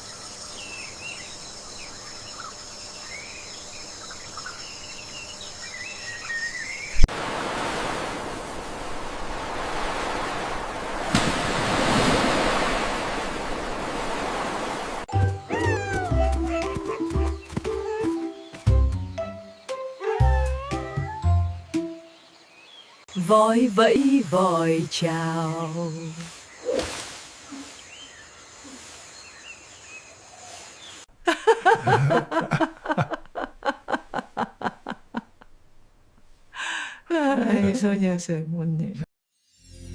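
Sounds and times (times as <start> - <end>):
high-pitched giggling laughter: 15.5 - 18.2, 31.2 - 35.3
soft bird chirps: 25.6 - 31.1.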